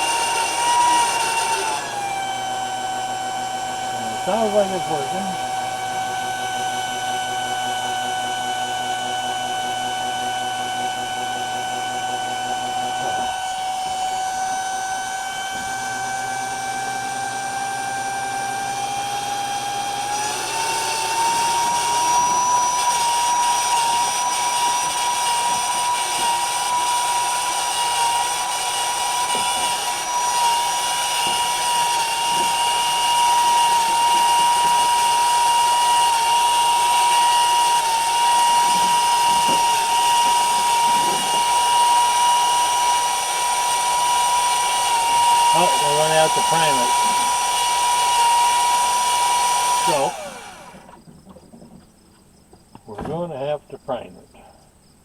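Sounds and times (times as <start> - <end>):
electric pump motor whine: 0.0 - 51.4.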